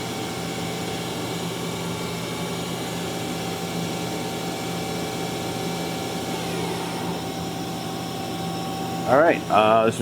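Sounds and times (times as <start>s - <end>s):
machine hum: 0.0s - 10.0s
spindle whine: 5.4s - 10.0s.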